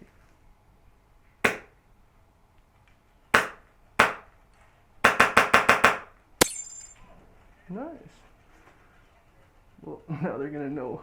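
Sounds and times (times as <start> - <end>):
airsoft gun firing: 3.4 - 4.2, 5.0 - 6.1.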